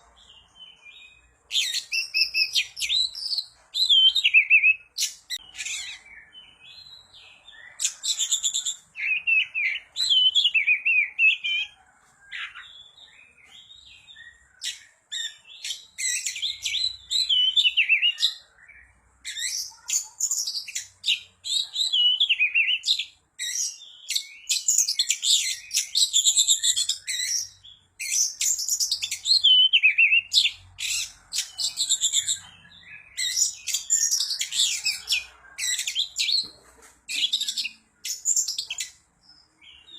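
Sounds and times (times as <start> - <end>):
bird song with whistles and trills: 0.0 - 39.9.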